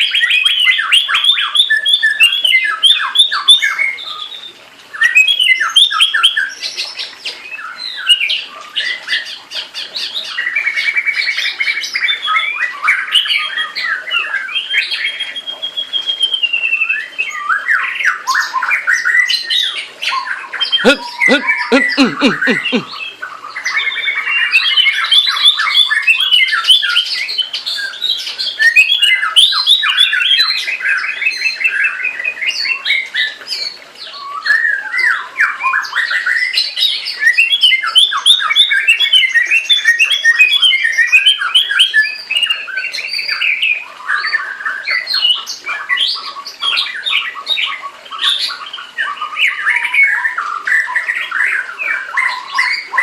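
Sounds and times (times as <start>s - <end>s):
bird singing piercing phrases: 10.3s - 27.1s.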